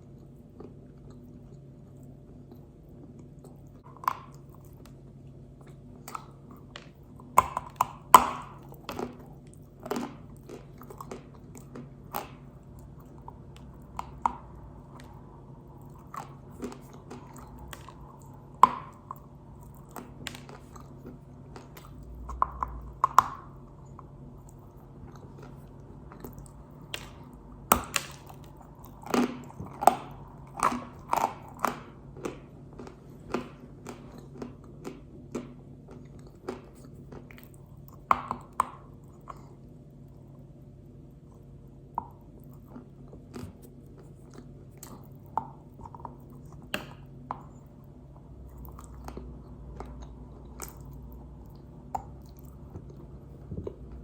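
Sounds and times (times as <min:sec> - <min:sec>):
clay being chewed crunching: 0:00.0 - 0:54.0.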